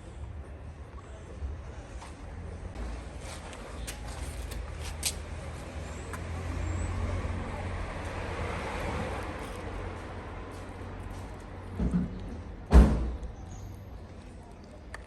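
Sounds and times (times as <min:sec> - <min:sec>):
road traffic rumble: 0:00.0 - 0:15.0
vehicle passing: 0:04.7 - 0:12.6.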